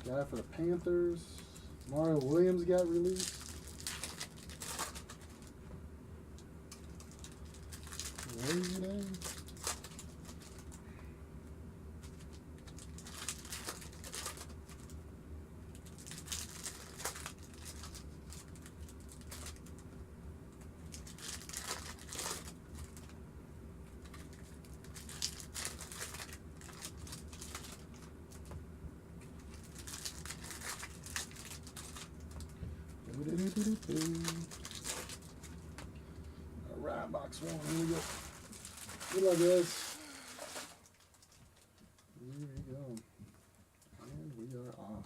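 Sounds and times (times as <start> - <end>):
plastic wrapping crinkling: 0.0 - 5.6, 6.7 - 10.8, 12.0 - 15.0, 15.7 - 19.9, 20.5 - 23.2, 23.9 - 28.6, 29.2 - 35.9, 37.3 - 42.6
steady low hum: 0.0 - 45.0.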